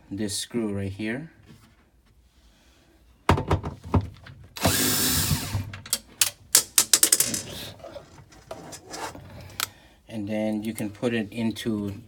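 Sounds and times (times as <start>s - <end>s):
cordless drill running: 4.6s - 5.7s
tool knocks and clicks: 5.4s - 7.5s.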